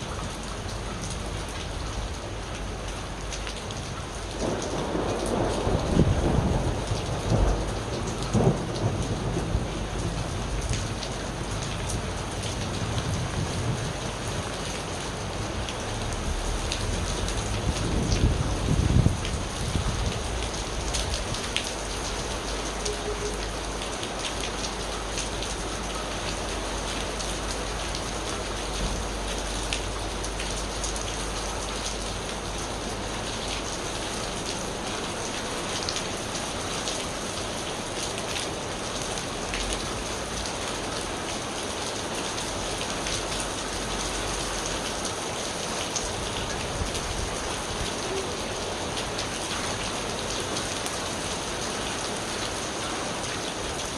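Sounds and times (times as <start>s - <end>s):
rain drops spattering: 0.0s - 53.9s
low thunder rumble: 4.4s - 12.2s, 12.8s - 23.8s.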